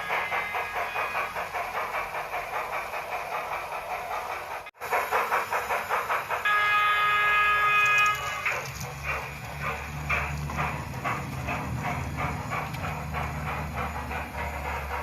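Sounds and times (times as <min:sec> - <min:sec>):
steam locomotive exhaust chuffs: 0:00.0 - 0:15.0
multi-tone steam whistle: 0:06.4 - 0:08.7.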